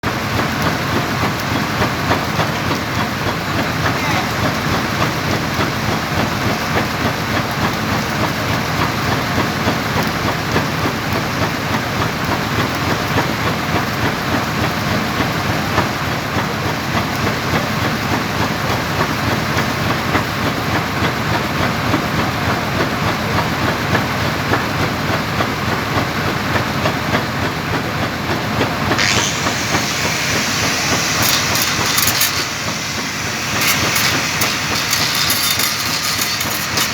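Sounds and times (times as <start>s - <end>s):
arc welding crackling hiss: 29.0s - 36.9s.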